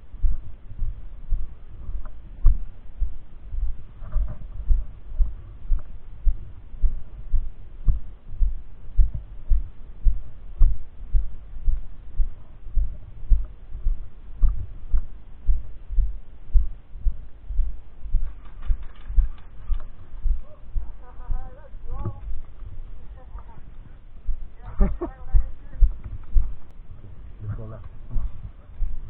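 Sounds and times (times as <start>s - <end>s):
footsteps jolting camera microphone: 18.1s - 24.0s.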